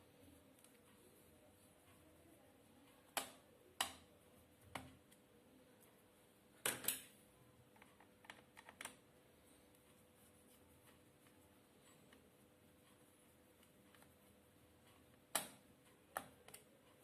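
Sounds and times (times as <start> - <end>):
faint steady hum: 0.0 - 17.0
small tools clicking on laptop: 6.6 - 9.1, 10.8 - 17.0.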